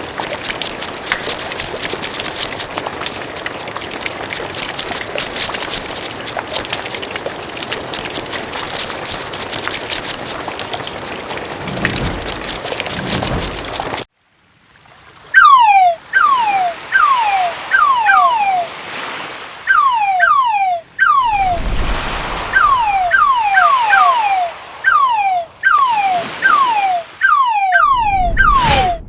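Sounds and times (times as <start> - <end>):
surf: 11.6 - 14.0, 15.3 - 29.0
cartoon falling whistle chirps: 11.7 - 12.5, 15.4 - 29.0.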